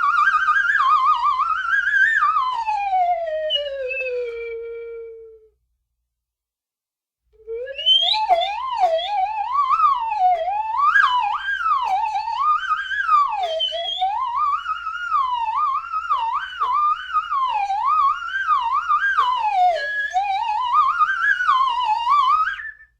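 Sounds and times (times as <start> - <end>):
slide whistle sweeps: 7.4 - 22.9.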